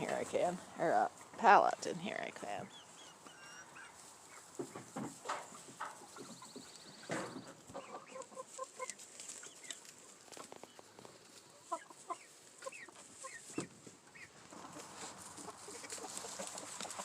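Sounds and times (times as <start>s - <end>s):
hens clucking: 0.0s - 17.0s.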